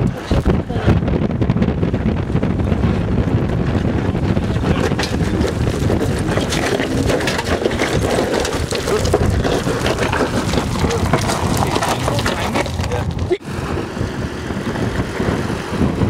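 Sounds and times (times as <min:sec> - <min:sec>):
wind buffeting microphone: 0:00.0 - 0:16.0
tyres crunching over gravel: 0:04.3 - 0:13.4.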